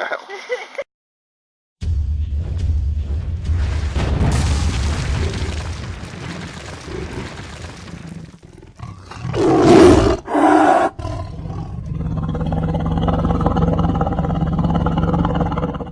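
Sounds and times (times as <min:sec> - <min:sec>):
loud roar: 0:08.8 - 0:15.9.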